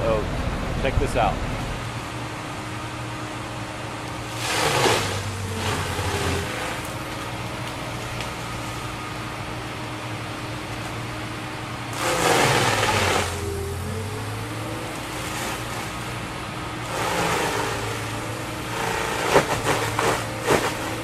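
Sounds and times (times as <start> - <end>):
forestry mulcher drone: 0.0 - 21.0
steel teeth grinding wood: 12.0 - 13.5.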